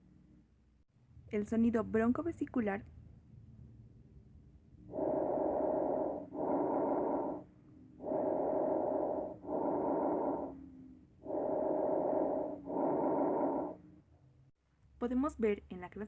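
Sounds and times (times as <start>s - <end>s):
breath sounds inhaling and exhaling: 4.9s - 13.8s.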